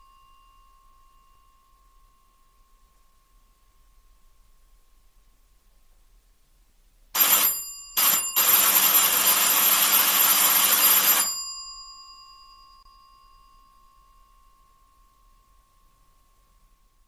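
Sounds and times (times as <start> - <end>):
electric doorbell ringing: 7.2 - 13.0.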